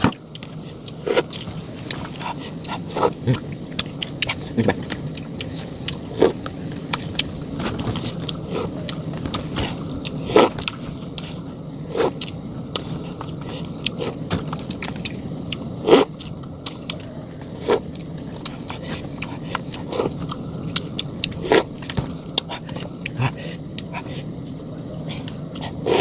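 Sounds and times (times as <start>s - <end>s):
chewing: 0.0s - 26.0s
steady background hiss: 0.0s - 26.0s.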